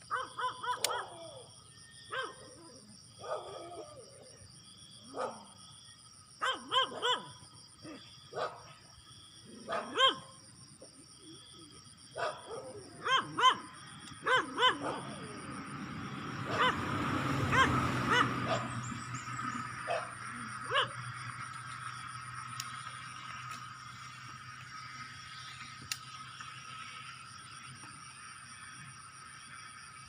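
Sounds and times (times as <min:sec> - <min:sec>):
insects chirring: 0:00.0 - 0:30.0
dog yelping barks: 0:00.1 - 0:01.4, 0:02.1 - 0:03.8, 0:06.4 - 0:08.6, 0:09.6 - 0:10.3, 0:12.2 - 0:15.4, 0:16.5 - 0:16.9, 0:17.5 - 0:18.7, 0:19.8 - 0:21.0.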